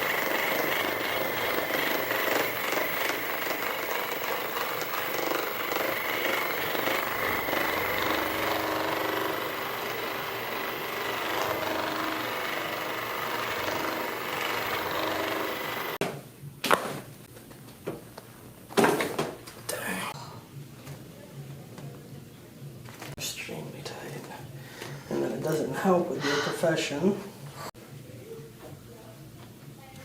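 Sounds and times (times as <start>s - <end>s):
massage tool hammering rattle: 0.0s - 16.0s.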